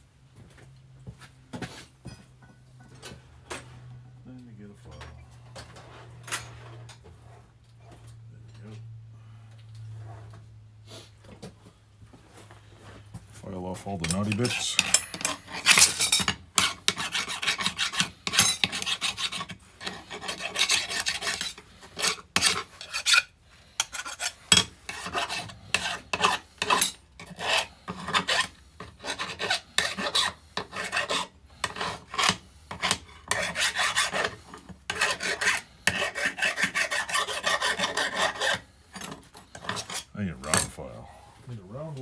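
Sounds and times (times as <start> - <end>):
hand file rasping on steel: 14.0 - 40.7.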